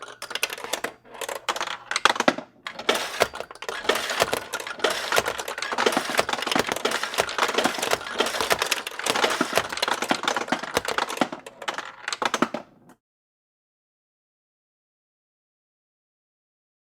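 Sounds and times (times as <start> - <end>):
steel balls clattering through pins: 0.0 - 12.4.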